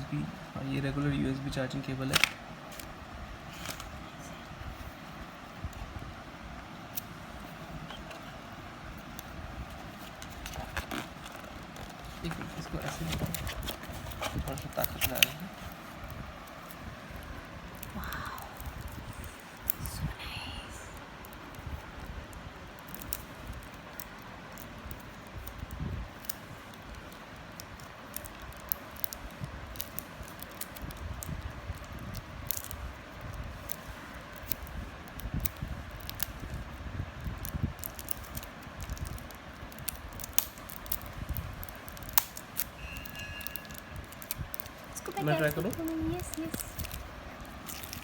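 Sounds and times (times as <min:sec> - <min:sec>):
faint tones: 0:42.8 - 0:44.3.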